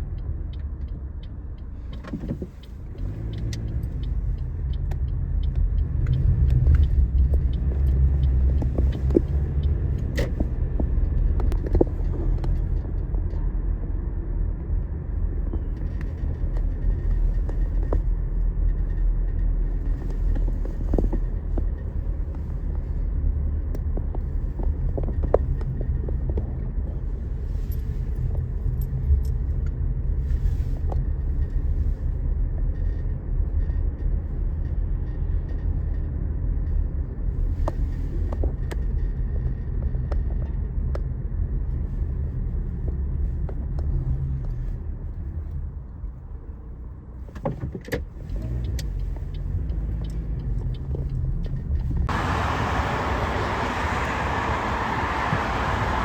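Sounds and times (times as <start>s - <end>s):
car cabin rumble: 15.3s - 31.9s, 47.2s - 56.0s.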